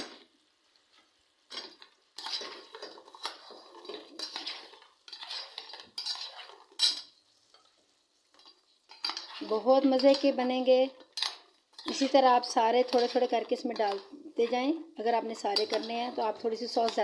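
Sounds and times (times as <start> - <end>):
spoon scraping and clinking on pan: 0.9 - 14.6, 15.4 - 17.0.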